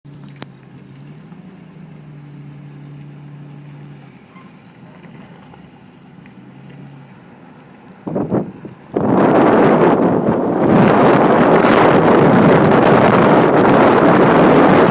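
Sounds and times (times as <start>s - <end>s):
motor low hum: 0.1s - 14.9s
wind gusts buffeting microphone: 7.7s - 14.9s.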